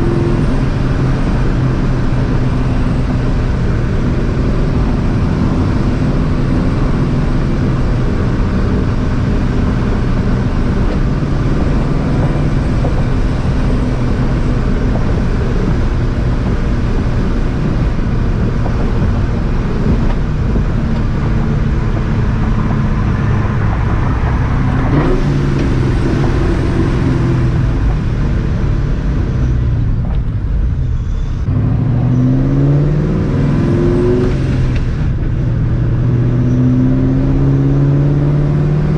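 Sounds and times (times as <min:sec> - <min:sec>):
loud car exhaust: 0:00.0 - 0:38.9.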